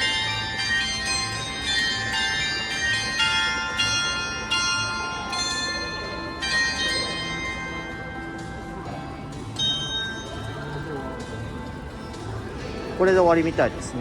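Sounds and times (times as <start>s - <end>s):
chime bells playing a tune: 0.0s - 13.7s.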